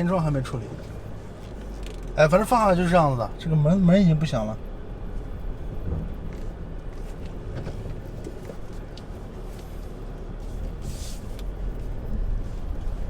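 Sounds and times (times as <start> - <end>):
road and engine rumble in car: 0.0 - 13.0
faint body clicks and creaks: 0.8 - 2.3, 5.9 - 13.0.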